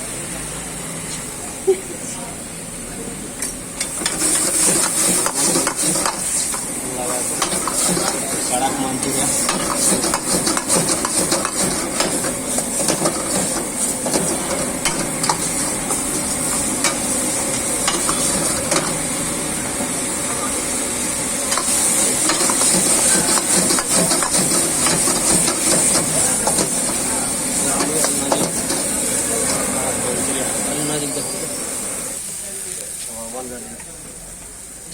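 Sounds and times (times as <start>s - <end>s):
food sizzling in a wok: 0.0s - 34.9s
metal ladle scraping pan: 3.9s - 6.6s, 7.4s - 19.0s.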